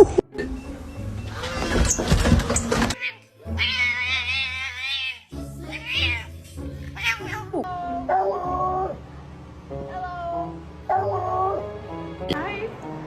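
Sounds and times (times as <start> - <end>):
background music: 0.0 - 13.0
noisy clatter: 1.4 - 3.0
animal crying: 2.9 - 9.0, 9.9 - 11.7.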